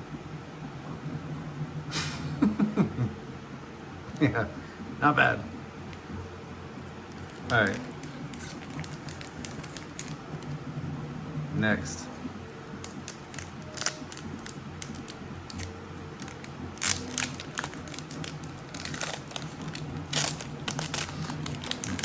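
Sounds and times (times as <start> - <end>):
foil wrapper crinkling and tearing: 7.0 - 10.6, 12.8 - 22.0.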